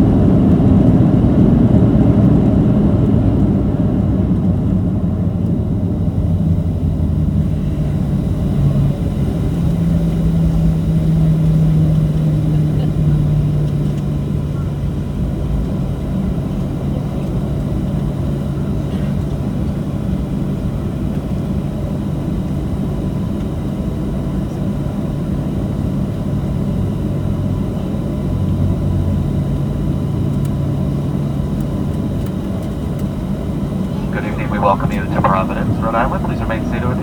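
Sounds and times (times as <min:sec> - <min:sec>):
jet cabin rumble: 0:33.4 - 0:37.0.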